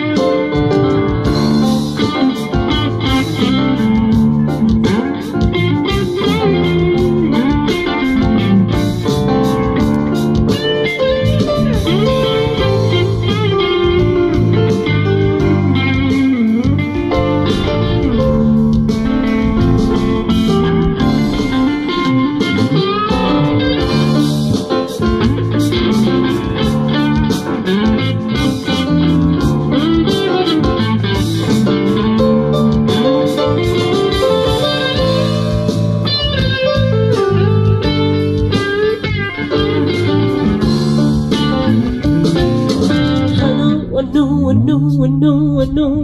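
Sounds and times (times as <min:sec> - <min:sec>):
blues guitar: 0:00.0 - 0:46.0
drums: 0:00.0 - 0:46.0
bass line: 0:00.6 - 0:30.1, 0:30.7 - 0:46.0.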